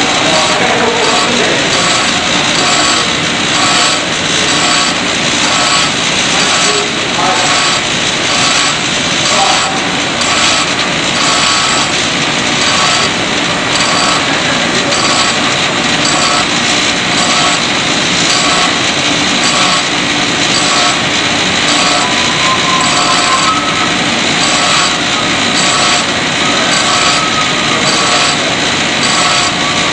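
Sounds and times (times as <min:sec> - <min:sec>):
power tool pulsing hiss: 0:00.3 - 0:29.9.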